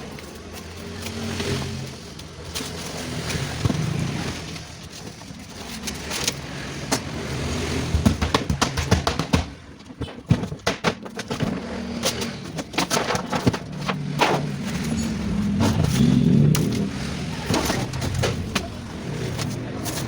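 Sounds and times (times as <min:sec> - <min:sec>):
metal parts clicking and knocking: 0:00.0 - 0:20.0
engine-like hum: 0:11.3 - 0:20.0.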